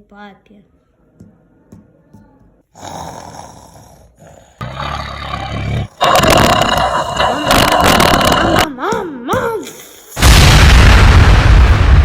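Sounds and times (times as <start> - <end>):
loud snoring: 2.8 - 8.7.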